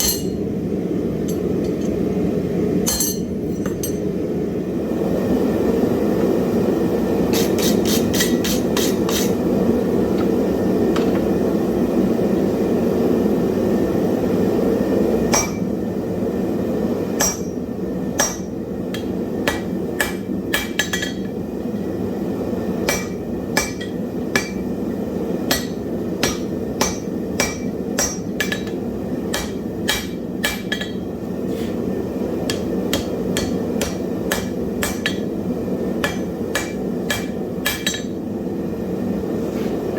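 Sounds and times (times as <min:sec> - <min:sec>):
hammer striking hot iron: 0:00.0 - 0:00.5, 0:01.2 - 0:02.0, 0:02.8 - 0:04.1, 0:07.3 - 0:09.4, 0:15.3 - 0:15.7, 0:17.2 - 0:21.4, 0:22.8 - 0:31.1, 0:32.4 - 0:38.2.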